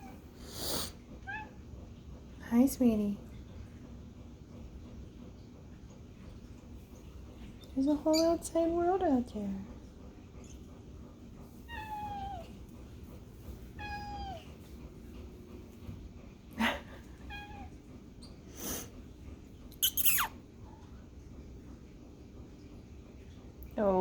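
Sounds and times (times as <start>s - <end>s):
cat meowing: 1.2s - 1.6s, 11.7s - 12.5s, 13.7s - 14.6s, 17.3s - 17.8s.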